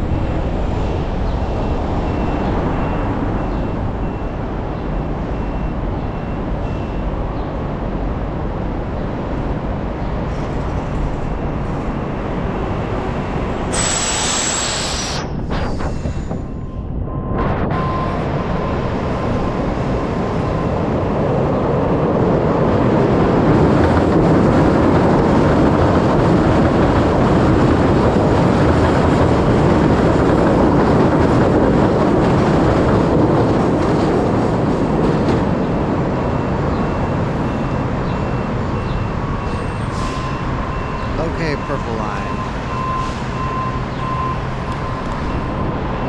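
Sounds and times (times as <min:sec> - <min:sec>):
rumbling rushing travel noise: 0:07.5 - 0:39.4.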